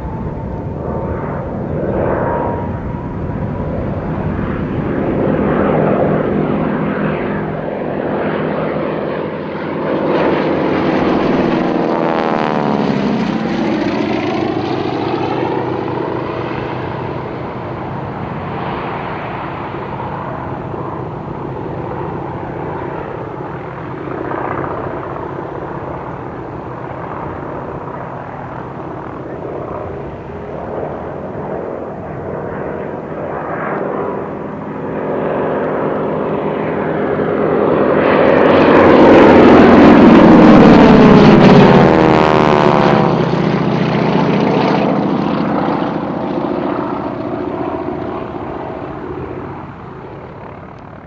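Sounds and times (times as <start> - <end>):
aircraft radial engine droning: 0.0 - 51.0.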